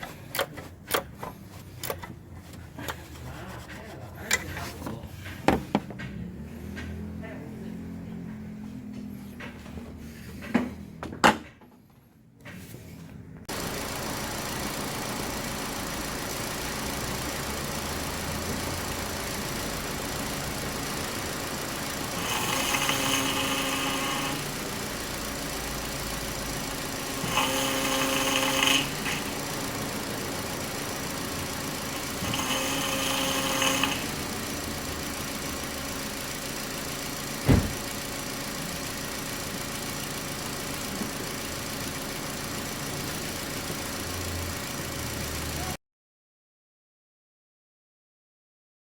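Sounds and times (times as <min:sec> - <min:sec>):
car engine starting and idling: 0:13.4 - 0:45.8
power steering whine: 0:13.5 - 0:45.8
sharp knock: 0:37.5 - 0:37.8.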